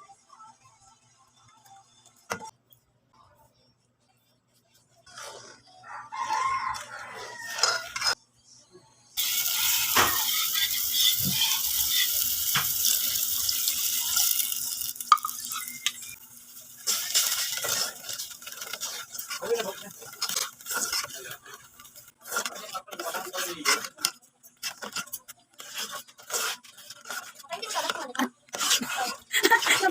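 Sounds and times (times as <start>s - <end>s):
utensils clinking on dishes: 9.2s - 16.2s, 16.8s - 29.9s
utensils scraping pans: 9.2s - 16.2s, 16.8s - 29.9s.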